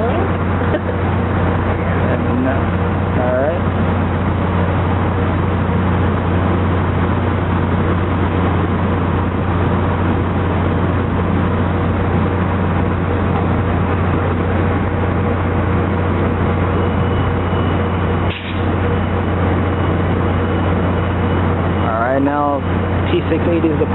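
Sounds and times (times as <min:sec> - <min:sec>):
diesel locomotive engine running: 0:00.0 - 0:23.9.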